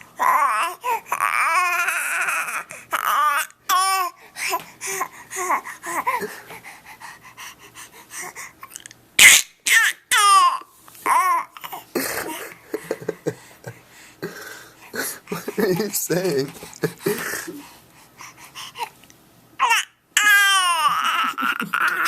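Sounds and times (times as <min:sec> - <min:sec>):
baby babbling and squealing: 0:19.6 - 0:22.0.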